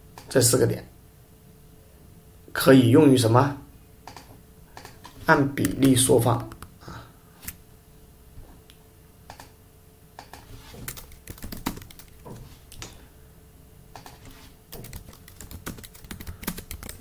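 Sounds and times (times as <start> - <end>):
computer keyboard typing: 4.1 - 6.7, 10.2 - 12.4, 14.0 - 17.0.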